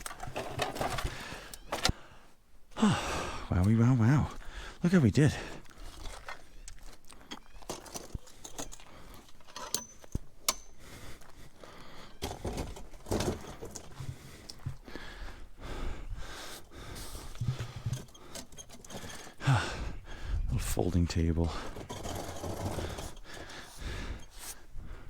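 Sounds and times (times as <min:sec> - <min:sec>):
items knocking and clicking: 0:00.0 - 0:02.0, 0:12.2 - 0:14.8
rustling: 0:20.9 - 0:24.7.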